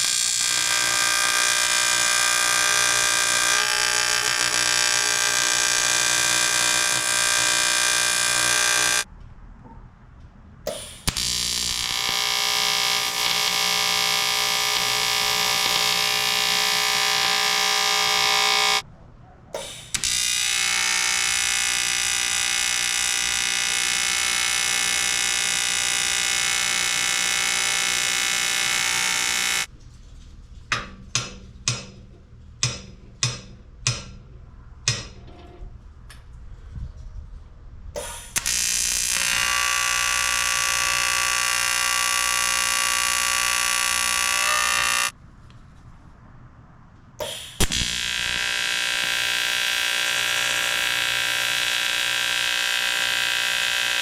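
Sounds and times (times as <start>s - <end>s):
welding arc buzzing: 0.0s - 9.1s, 10.7s - 18.8s, 19.6s - 29.7s, 38.0s - 45.2s, 47.2s - 54.0s.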